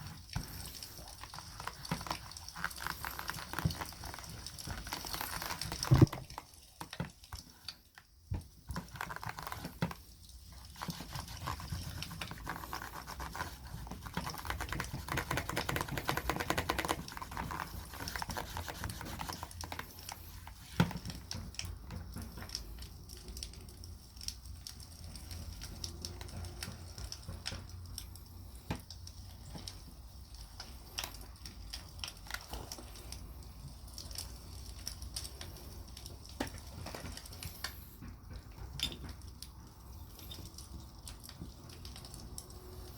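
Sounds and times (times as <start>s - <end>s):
wax rubbed into leather: 0.0s - 6.2s, 10.6s - 20.8s.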